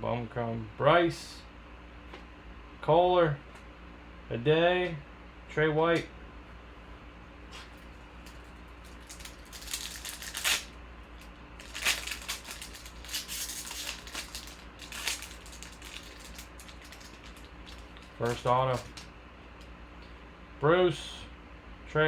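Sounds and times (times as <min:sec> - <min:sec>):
wrappers and cards crinkling: 0:07.5 - 0:19.7.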